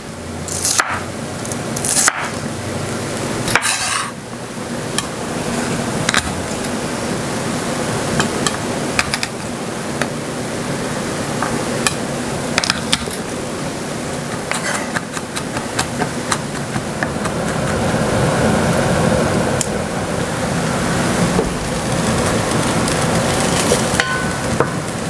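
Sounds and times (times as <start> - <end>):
steady background hiss: 0.0 - 25.0
knife chopping on cutting board: 0.5 - 1.1, 1.8 - 2.4, 3.5 - 4.1, 12.6 - 13.2, 14.3 - 17.8.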